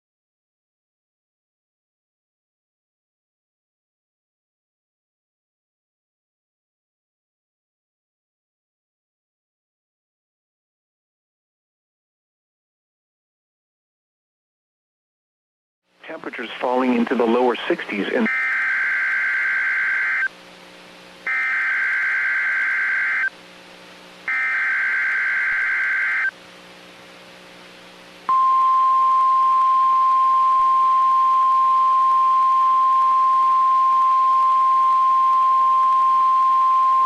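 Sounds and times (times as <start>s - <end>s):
steady warning alarm tone: 17.6s - 20.3s, 21.2s - 23.3s, 24.3s - 26.3s
warbling data tones: 18.1s - 20.3s, 21.3s - 23.3s, 24.3s - 26.3s.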